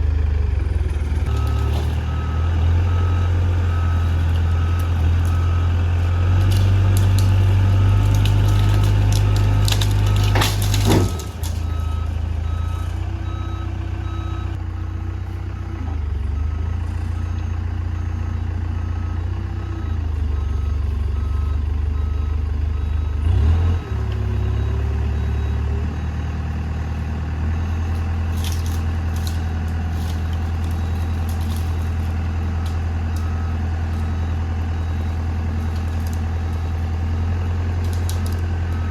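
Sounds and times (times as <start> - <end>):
heavy machinery diesel engine: 0.0 - 38.9
backup alarm beeping: 27.6 - 36.8.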